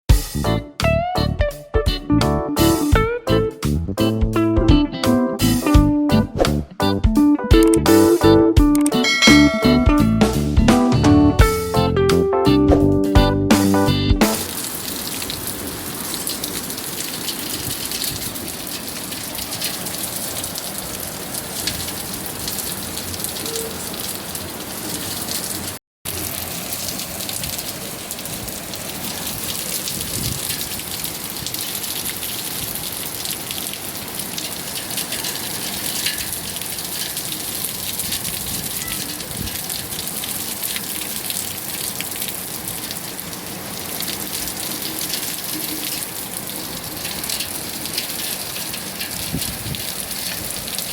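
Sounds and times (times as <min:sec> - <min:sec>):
steady rain falling: 0:14.2 - 0:50.9.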